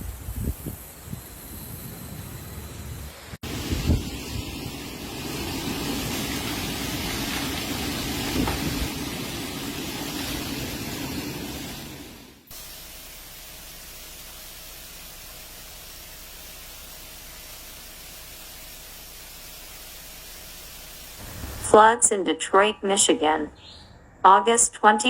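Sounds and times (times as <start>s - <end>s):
wind rumble on microphone: 0.0s - 11.8s
storm wind rushing: 0.0s - 12.5s.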